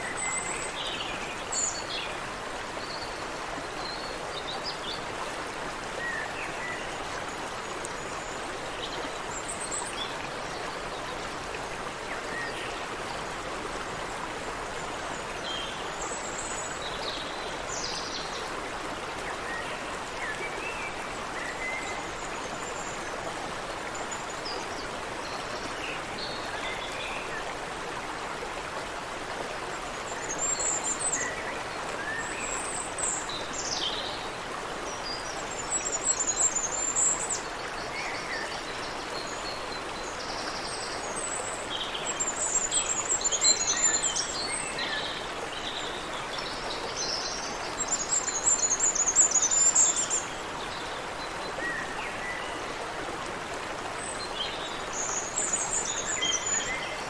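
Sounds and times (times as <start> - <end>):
creek water running: 0.0 - 57.0.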